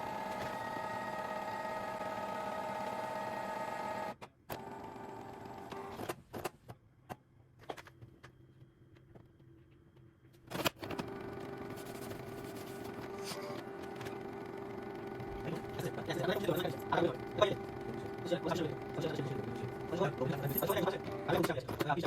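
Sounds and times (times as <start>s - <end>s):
printer motor whirring: 0.0s - 6.1s, 10.8s - 22.0s.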